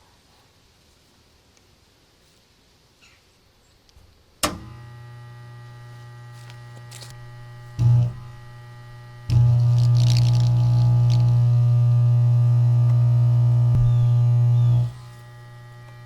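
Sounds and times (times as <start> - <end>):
electric arc buzzing: 4.6 - 16.0.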